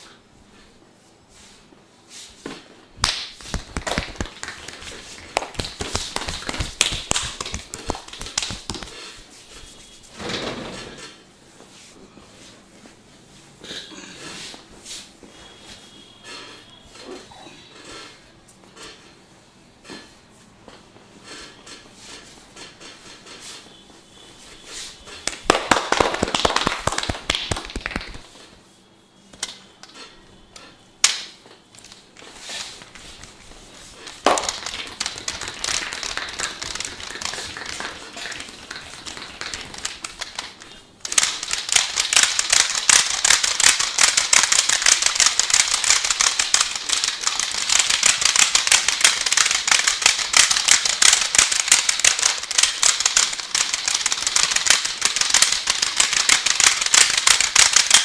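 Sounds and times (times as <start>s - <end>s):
hands tapping and slapping body: 3.0s - 9.0s, 25.2s - 28.2s, 34.1s - 58.0s
sharp snaps: 3.0s - 9.0s, 34.0s - 58.0s.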